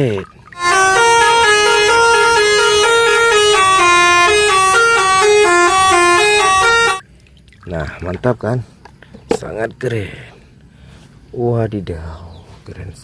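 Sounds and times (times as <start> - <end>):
multi-note bus horn tune: 0.6 - 7.0.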